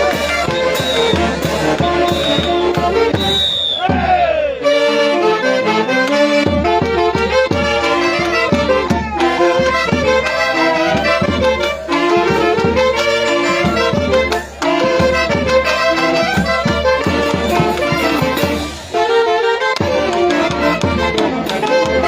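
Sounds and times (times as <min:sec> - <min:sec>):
festive orchestra music: 0:00.0 - 0:03.7, 0:04.6 - 0:22.0
steady drum beat: 0:00.0 - 0:04.3.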